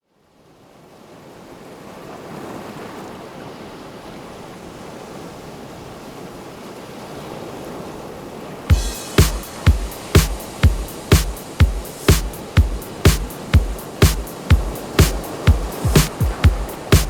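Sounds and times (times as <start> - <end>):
ocean surf: 8.7 - 17.0.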